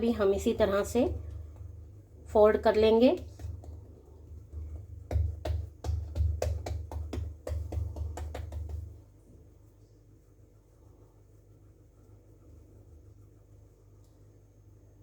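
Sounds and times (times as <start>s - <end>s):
hands tapping dough on board: 2.6s - 9.0s.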